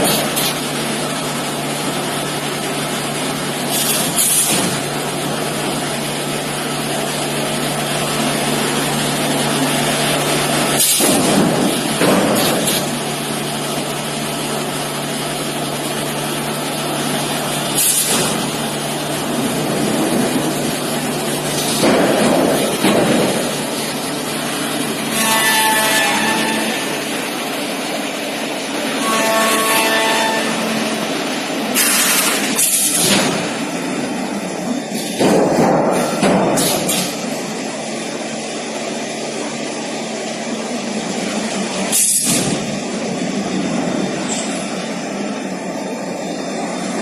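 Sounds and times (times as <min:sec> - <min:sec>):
cnc machining noise: 0:00.0 - 0:35.2.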